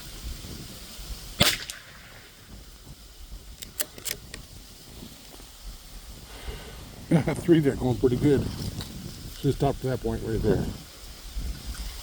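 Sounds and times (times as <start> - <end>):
rifle shot: 1.4 - 2.3
rifle bolt clicks: 3.6 - 4.4.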